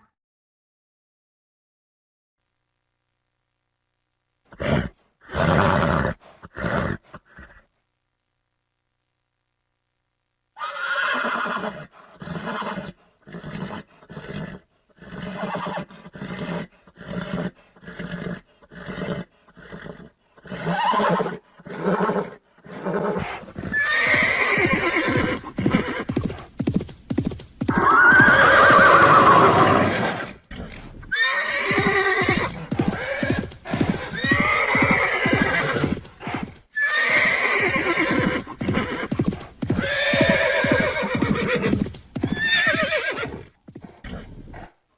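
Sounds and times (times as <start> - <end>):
horse whinnies: 10.6 - 26.3, 27.7 - 44.7
horse hooves clip-clopping: 23.2 - 30.0, 30.8 - 44.0.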